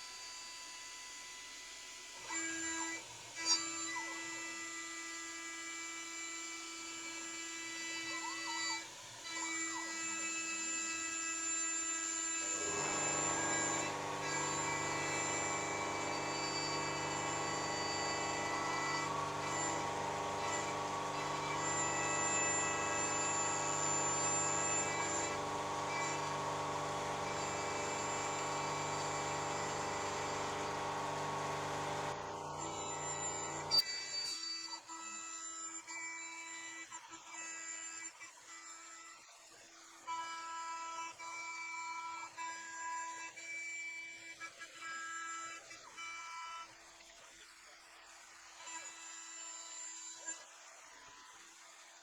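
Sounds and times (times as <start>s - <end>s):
milling machine motor whine: 0.0s - 38.1s
cutter machining metal: 0.0s - 39.2s, 48.4s - 51.5s.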